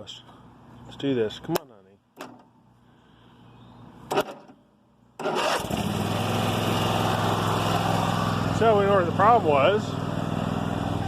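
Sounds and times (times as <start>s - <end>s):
lawn mower engine running: 5.2s - 11.0s.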